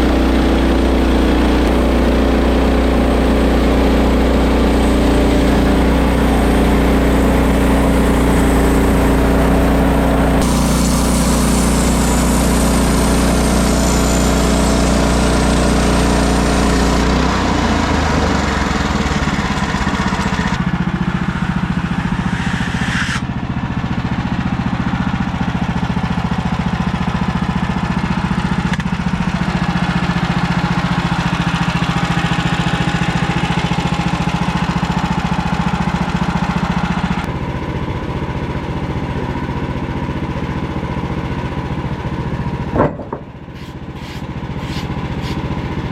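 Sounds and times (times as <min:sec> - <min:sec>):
sawmill engine running: 0:00.0 - 0:45.9.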